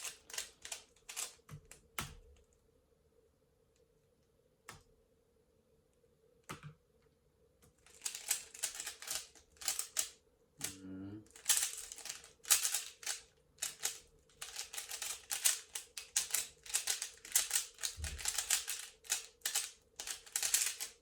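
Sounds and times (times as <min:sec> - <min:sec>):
puzzle cube clacking turns: 0:00.0 - 0:01.8, 0:07.8 - 0:21.0.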